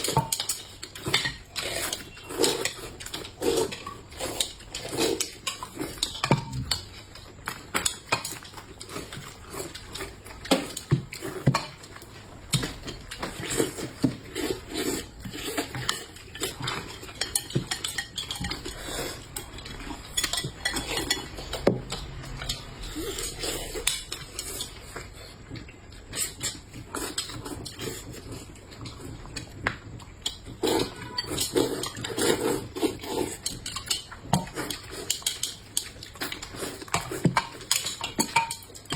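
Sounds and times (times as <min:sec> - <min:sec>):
utensils clinking on plates: 0:12.6 - 0:25.0, 0:30.3 - 0:38.9.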